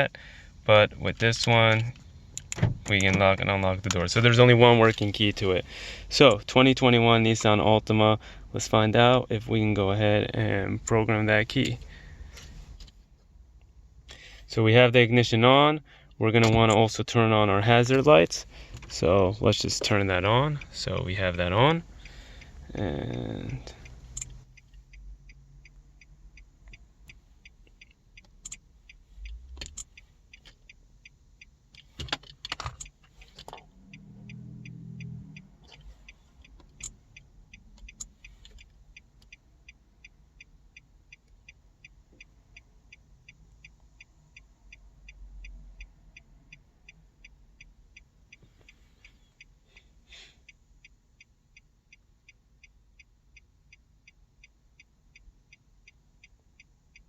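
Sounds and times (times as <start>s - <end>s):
hazard-light flasher ticking: 19.7s - 32.0s, 32.8s - 48.4s, 49.4s - 57.0s.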